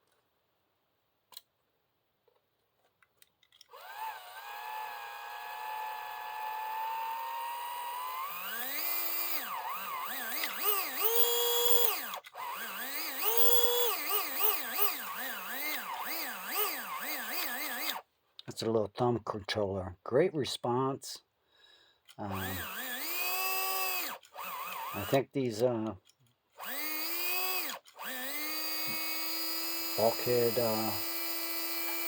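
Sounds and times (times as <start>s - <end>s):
slot car electric motor whining: 3.7s - 18.0s, 22.3s - 25.2s, 26.6s - 32.0s.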